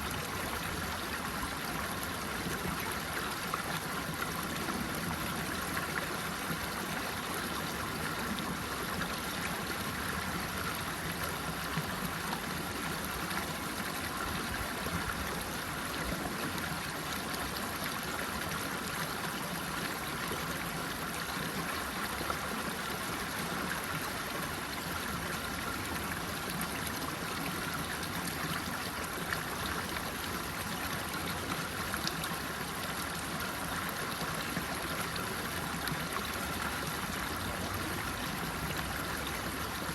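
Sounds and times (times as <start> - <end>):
babbling stream water: 0.0 - 39.9.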